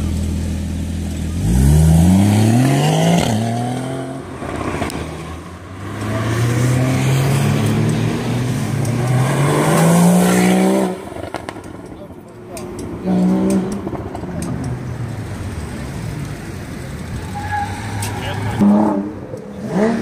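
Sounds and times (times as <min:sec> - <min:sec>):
car engine revving: 0:00.0 - 0:20.0.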